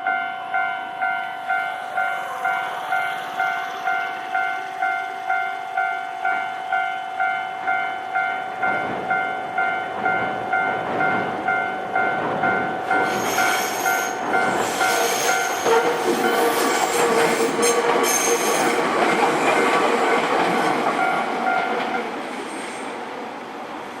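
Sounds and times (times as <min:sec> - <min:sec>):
electric train passing: 0:00.0 - 0:24.0
rail noise: 0:00.0 - 0:24.0
high whine: 0:01.1 - 0:06.5.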